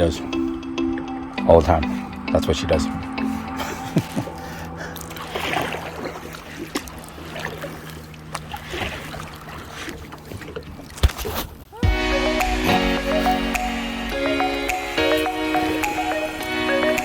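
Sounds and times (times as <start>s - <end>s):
paddle splashing in water: 4.4s - 11.7s.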